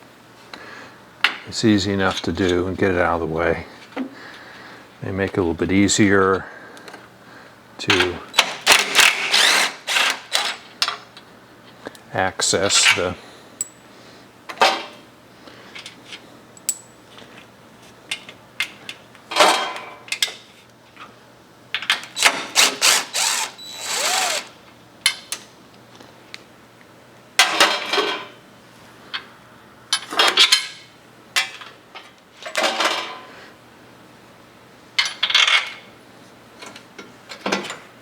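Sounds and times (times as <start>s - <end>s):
handheld power tool running: 8.7s - 10.5s, 22.2s - 24.6s.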